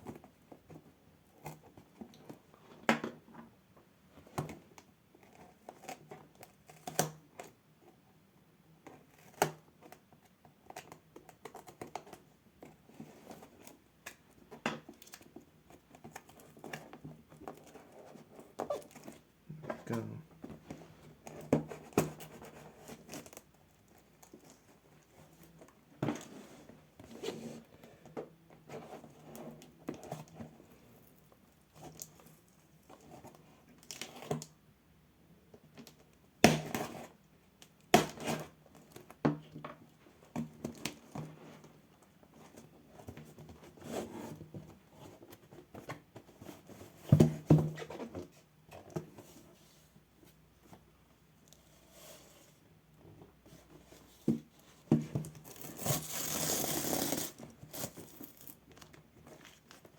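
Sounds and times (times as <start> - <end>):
packaging rustling and crinkling: 55.0 - 59.9
tape tearing: 55.4 - 58.6.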